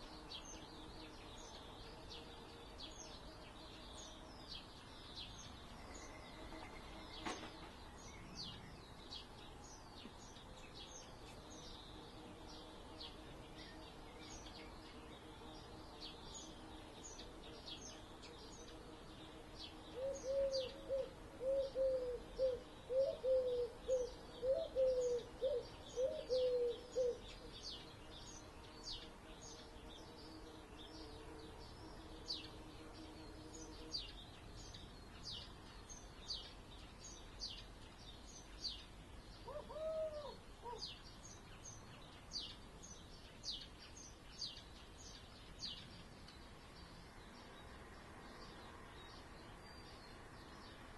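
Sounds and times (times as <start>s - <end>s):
small birds chirping: 0.0s - 50.9s
distant traffic hum: 44.8s - 50.9s.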